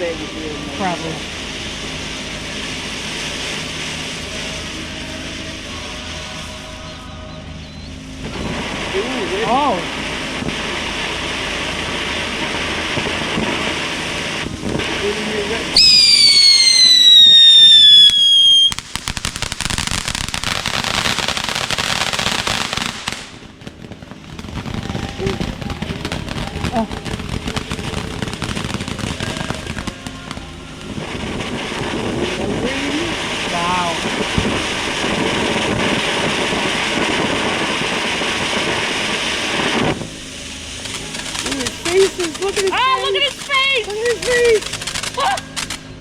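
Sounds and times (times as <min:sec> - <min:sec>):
firework crackling: 0:00.0 - 0:46.0
firework whistle falling in pitch: 0:15.8 - 0:19.2.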